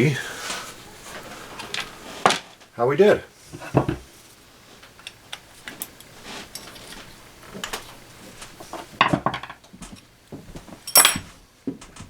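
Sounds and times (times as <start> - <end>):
metal tools clicking and knocking: 10.8 - 11.3.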